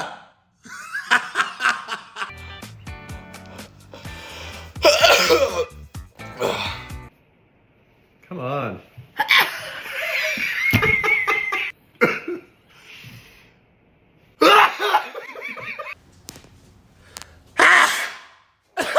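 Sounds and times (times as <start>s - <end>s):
laughter: 0.6s - 2.3s, 9.2s - 12.5s, 14.4s - 16.0s
person sneezing: 4.8s - 5.8s, 17.6s - 18.9s.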